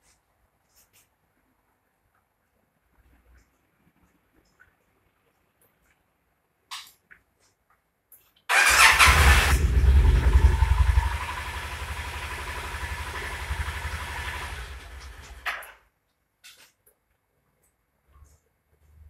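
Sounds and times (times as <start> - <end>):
motorcycle engine starting and idling: 8.5 - 15.7.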